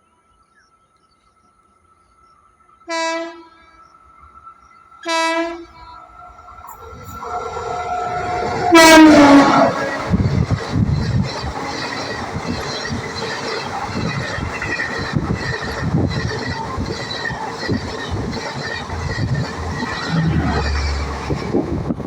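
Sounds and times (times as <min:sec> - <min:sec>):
train rumble: 0:01.4 - 0:22.0
train horn: 0:02.9 - 0:03.8, 0:05.0 - 0:06.2, 0:07.0 - 0:10.4
wheels clacking over rail joints: 0:06.0 - 0:22.0.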